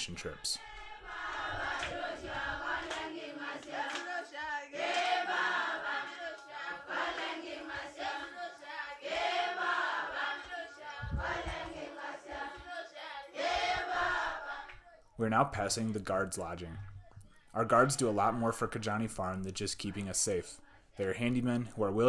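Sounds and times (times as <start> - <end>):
choir singing: 0.0 - 15.1.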